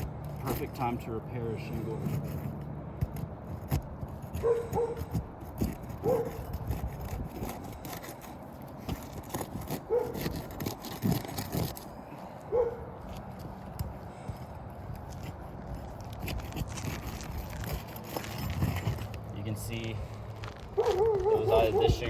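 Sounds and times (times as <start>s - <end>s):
shingles scraping and clicking: 0.0s - 22.0s
dog barking: 4.4s - 5.0s, 6.0s - 6.4s, 9.9s - 10.2s, 12.5s - 12.9s, 20.8s - 22.0s.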